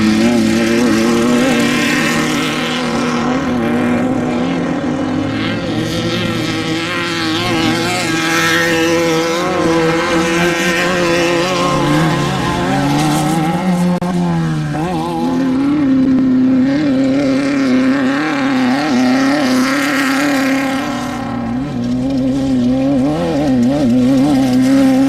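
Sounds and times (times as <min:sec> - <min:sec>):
engine running at high revs: 0:00.0 - 0:25.0.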